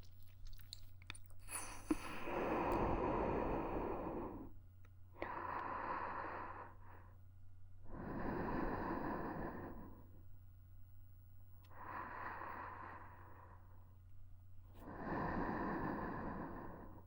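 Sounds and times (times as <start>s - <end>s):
slow airy breaths: 1.4s - 4.6s, 5.2s - 7.2s, 7.8s - 10.3s, 11.7s - 14.0s, 14.7s - 17.0s.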